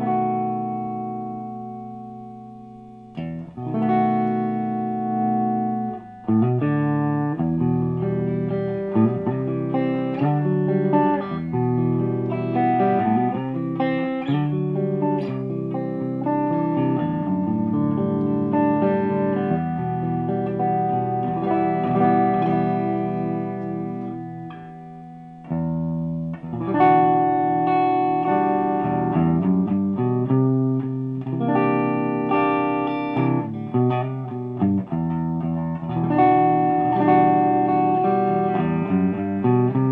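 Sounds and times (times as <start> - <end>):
clean electric guitar: 0.0 - 39.9.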